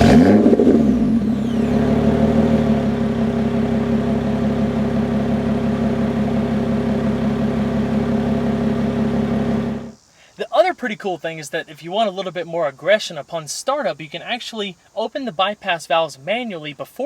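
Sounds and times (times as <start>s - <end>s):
car engine revving then idling: 0.0s - 10.0s.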